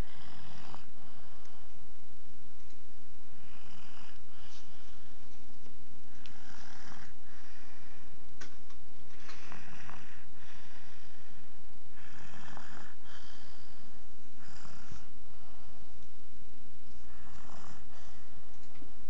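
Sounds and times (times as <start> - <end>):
person snoring: 0.0 - 1.7, 3.3 - 5.2, 6.1 - 8.2, 9.1 - 15.9, 17.0 - 18.4
steady low hum: 0.0 - 19.0.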